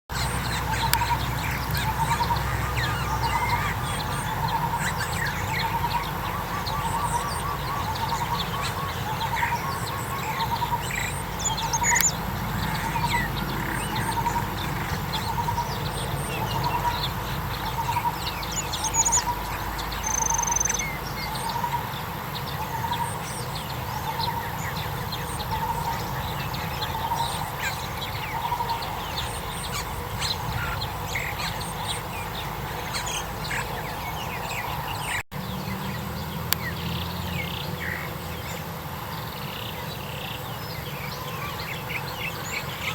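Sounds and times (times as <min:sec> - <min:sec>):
bird low repeated call: 0:00.1 - 0:21.8.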